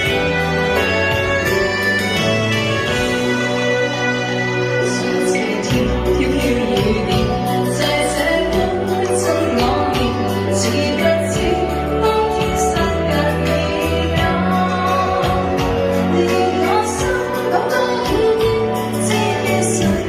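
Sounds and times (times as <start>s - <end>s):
accompaniment with bass and beat: 0.0s - 20.0s
woman singing pop song: 4.8s - 20.0s.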